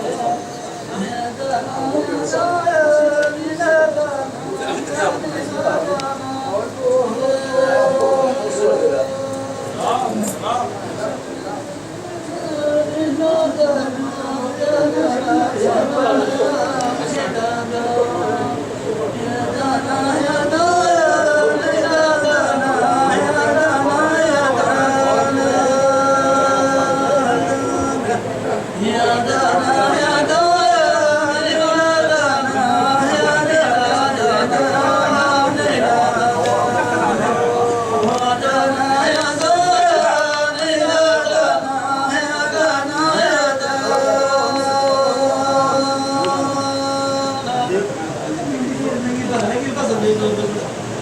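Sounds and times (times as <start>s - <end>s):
person singing ornamented melody: 12.0s - 47.9s.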